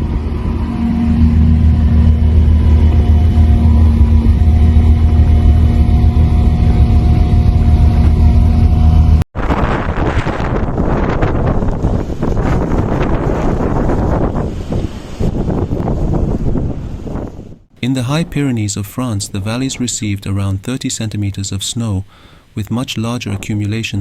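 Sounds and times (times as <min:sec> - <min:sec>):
vehicle engine running: 0:00.0 - 0:09.3
wind buffeting microphone: 0:00.0 - 0:20.5.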